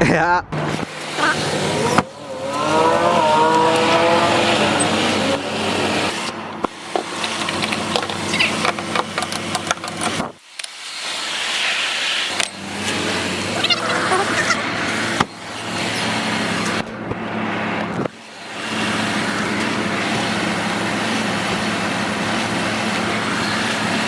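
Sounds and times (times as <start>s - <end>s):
car engine revving up: 0.5s - 10.4s, 12.3s - 24.0s
road noise: 0.5s - 24.0s.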